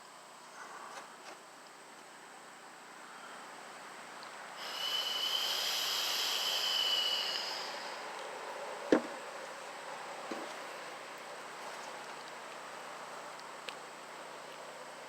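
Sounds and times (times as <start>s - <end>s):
air hissing with thin whistle: 4.5s - 9.4s
sharp knock: 8.9s - 9.1s.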